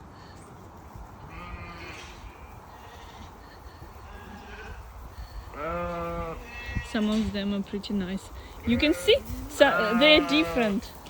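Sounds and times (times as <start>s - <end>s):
sheep bleating: 1.3s - 3.3s, 4.0s - 4.9s, 5.5s - 7.1s, 8.6s - 11.0s.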